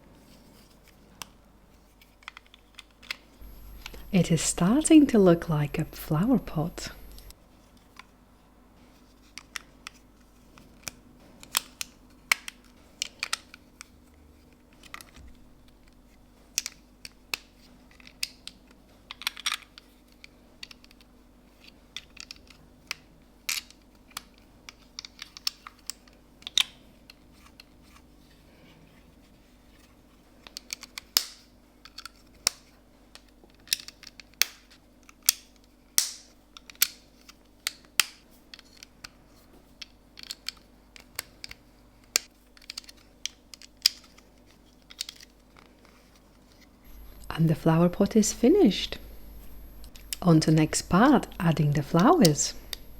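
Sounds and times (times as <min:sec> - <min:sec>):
plastic bricks clicking together: 0:18.0 - 0:19.9.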